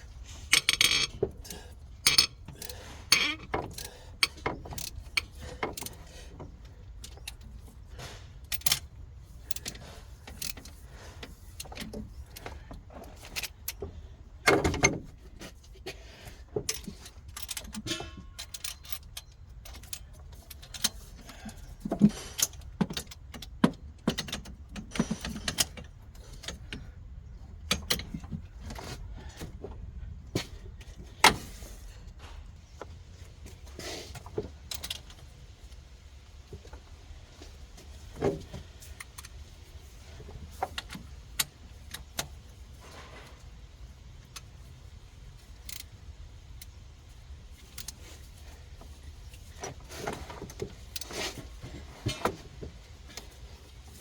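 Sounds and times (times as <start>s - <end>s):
hand tools knocking metal parts: 0.5s - 6.0s.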